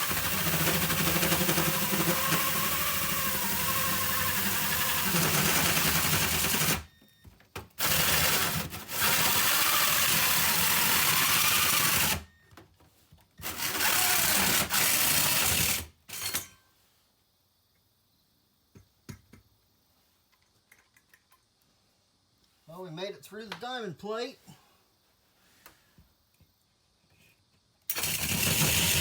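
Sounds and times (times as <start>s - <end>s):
power drill cutting metal: 0.0s - 6.9s, 7.8s - 12.2s, 13.4s - 16.4s, 27.9s - 29.0s.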